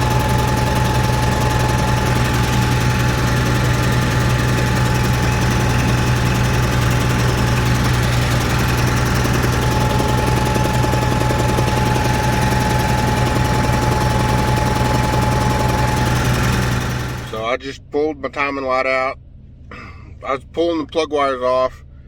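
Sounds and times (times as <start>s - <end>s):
industrial engine running with miss: 0.0s - 17.6s.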